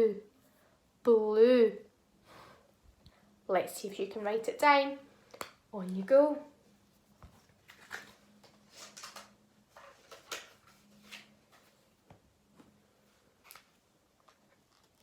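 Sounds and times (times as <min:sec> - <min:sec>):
small clicks and rustles: 0:07.2 - 0:11.8, 0:13.4 - 0:15.0.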